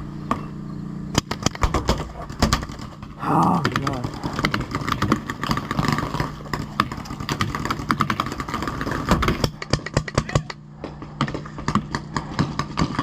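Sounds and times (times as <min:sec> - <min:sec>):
steady low hum: 0:00.0 - 0:13.0
paintball markers firing: 0:03.6 - 0:13.0.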